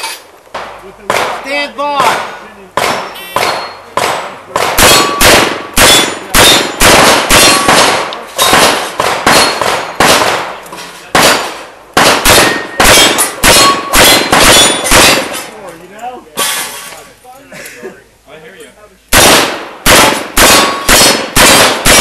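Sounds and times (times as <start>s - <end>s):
steel targets clanging: 0.0s - 0.3s, 2.9s - 4.0s, 4.8s - 10.0s, 12.4s - 15.6s
revolver gunshots: 2.0s - 15.5s, 19.1s - 22.0s.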